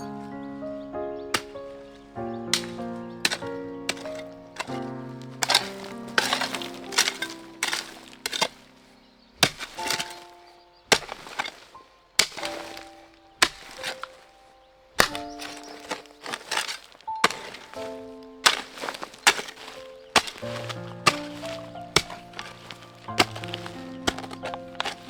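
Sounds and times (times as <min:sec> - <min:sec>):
background music with held notes: 0:00.0 - 0:16.3.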